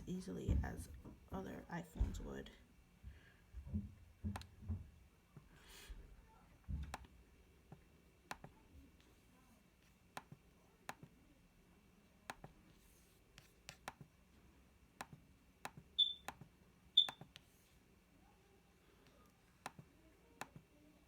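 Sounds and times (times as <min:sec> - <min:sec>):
small tools clicking on phone: 0:13.6 - 0:14.1.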